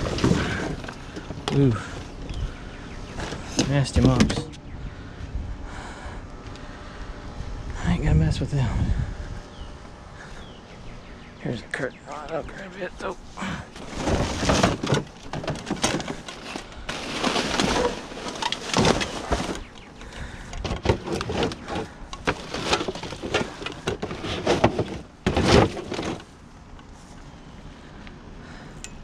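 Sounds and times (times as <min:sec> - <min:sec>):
junk rummaged in dumpster: 0:00.0 - 0:04.6, 0:13.4 - 0:26.4.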